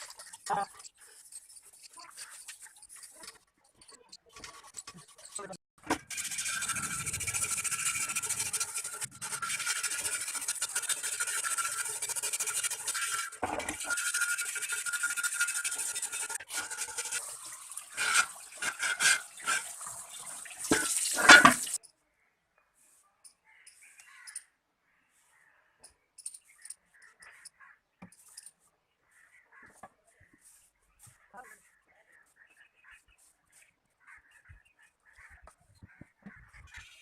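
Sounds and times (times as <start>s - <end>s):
steady brushing or scrubbing: 0.0s - 21.8s.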